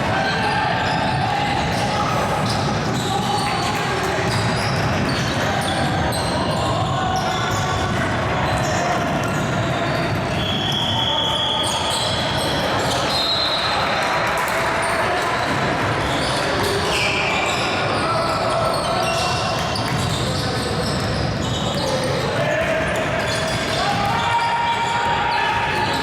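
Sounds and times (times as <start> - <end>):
busy gym noise: 0.0 - 26.0.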